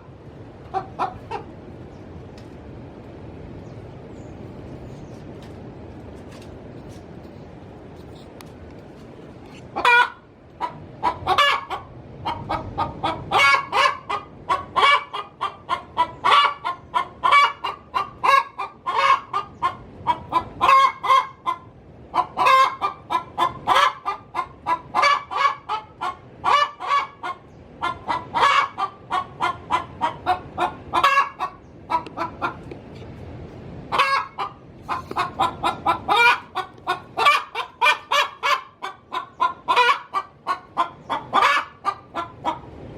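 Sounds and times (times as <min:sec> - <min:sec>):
hen cackling: 0:00.0 - 0:01.8, 0:09.5 - 0:32.7, 0:33.9 - 0:42.8.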